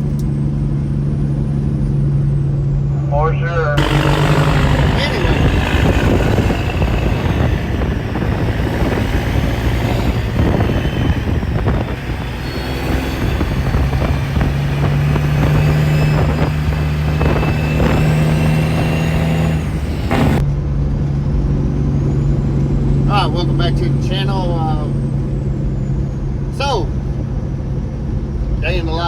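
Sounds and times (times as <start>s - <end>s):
truck engine hum: 0.0s - 29.0s
knocks and rattles of truck: 3.8s - 20.4s.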